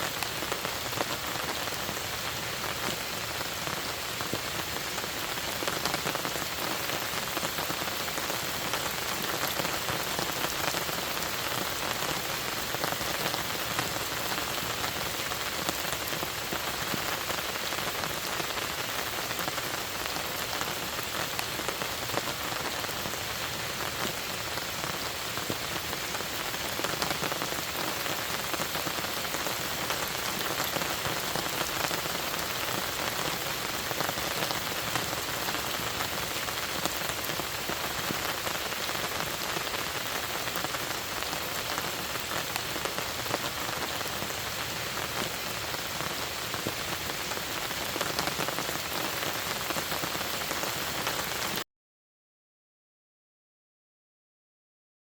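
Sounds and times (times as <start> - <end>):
rain falling on a lake: 0.0 - 51.6.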